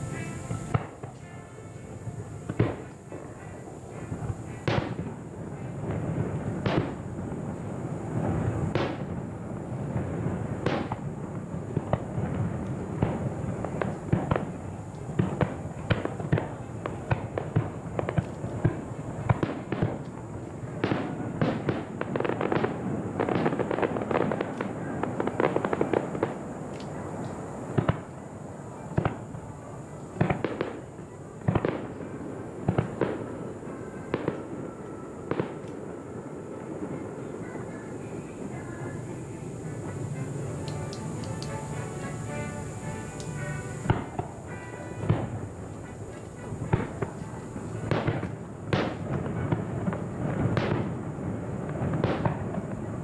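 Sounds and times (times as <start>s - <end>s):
continuous rumble: 0.0s - 53.0s
fireworks bangs and cracks: 0.0s - 53.0s.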